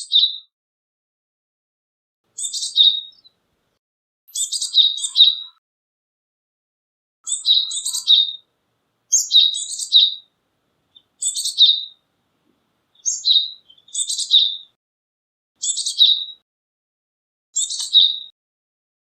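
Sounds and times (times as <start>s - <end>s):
bird singing high-pitched phrases: 0.0s - 0.5s, 2.4s - 3.4s, 4.3s - 5.6s, 7.2s - 8.5s, 9.1s - 10.3s, 10.9s - 12.0s, 13.0s - 14.8s, 15.6s - 16.4s, 17.6s - 18.3s.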